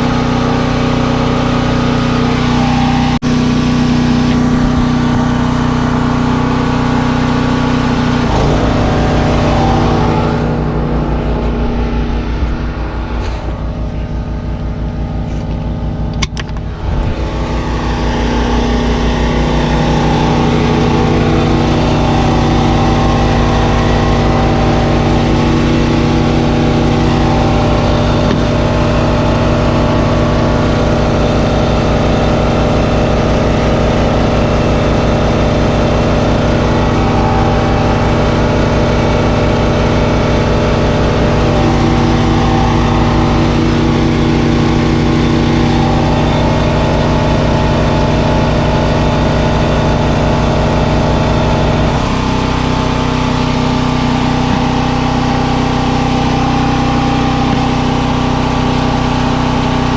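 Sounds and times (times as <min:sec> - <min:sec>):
engine running: 0:00.0 - 0:59.9
sharp click: 0:16.1 - 0:16.7.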